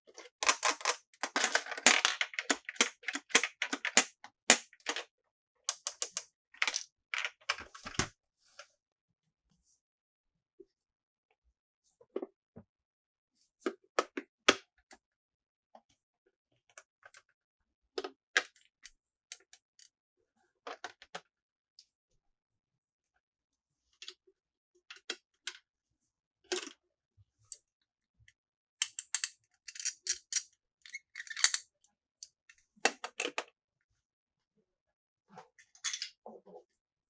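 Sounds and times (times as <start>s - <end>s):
plastic toy pieces clicking: 0.4s - 5.0s, 28.8s - 31.6s.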